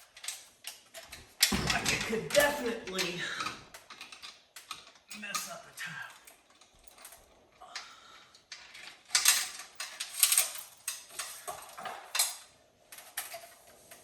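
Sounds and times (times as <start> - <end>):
hard objects clattering and clinking: 0.0 - 13.6
sharp knocks: 1.5 - 2.5.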